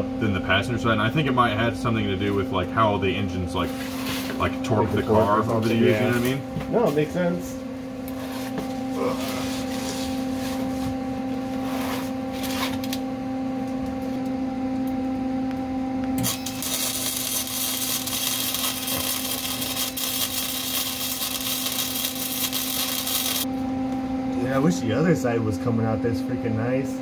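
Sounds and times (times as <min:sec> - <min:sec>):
constant hum: 0:00.0 - 0:27.0
welding arc crackling: 0:16.1 - 0:23.5.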